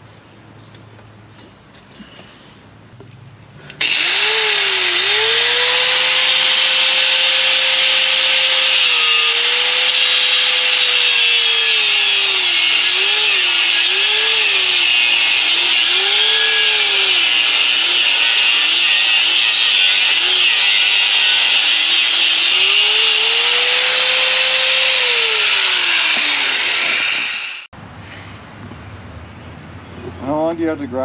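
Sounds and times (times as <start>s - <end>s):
angle grinder grinding steel: 3.8s - 27.7s.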